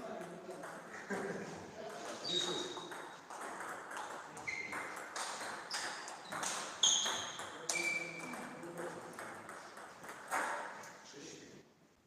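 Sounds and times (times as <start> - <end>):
table tennis ball hits: 2.5 - 10.8.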